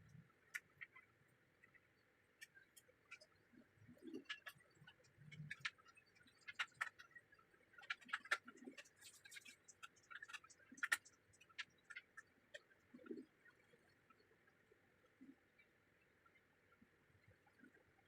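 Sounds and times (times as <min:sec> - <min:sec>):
small clicks and taps: 0:00.1 - 0:03.3.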